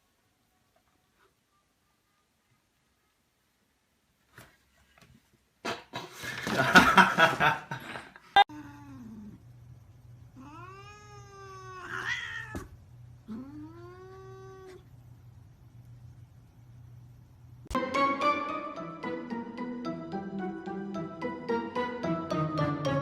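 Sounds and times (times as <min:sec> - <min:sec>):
cat meowing: 0:10.4 - 0:12.7
cat yowling: 0:10.4 - 0:12.7, 0:13.3 - 0:14.8.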